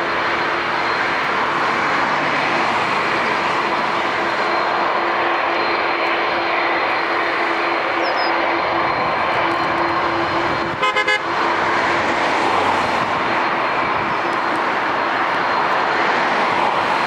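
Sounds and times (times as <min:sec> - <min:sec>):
jet engines roaring: 0:00.0 - 0:17.0
honk pulses: 0:10.2 - 0:11.4.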